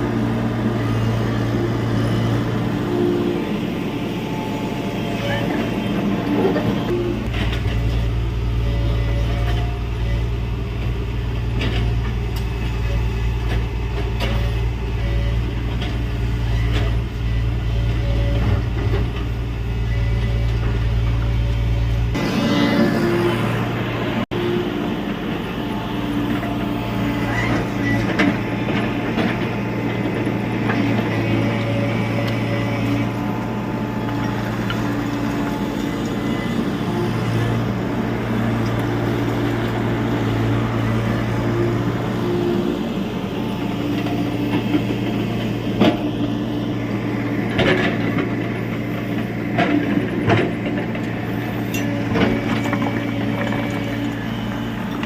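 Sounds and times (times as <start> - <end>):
excavator running: 0.0 - 55.0.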